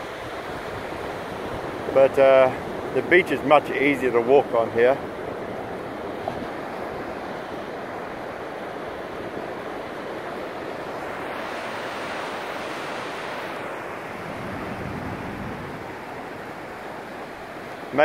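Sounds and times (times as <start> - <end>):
waves washing on sandy beach: 0.0 - 18.0.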